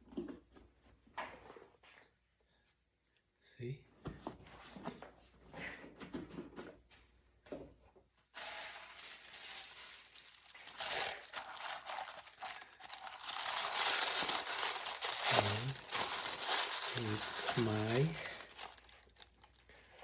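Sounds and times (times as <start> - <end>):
packaging crinkling: 8.4 - 19.8.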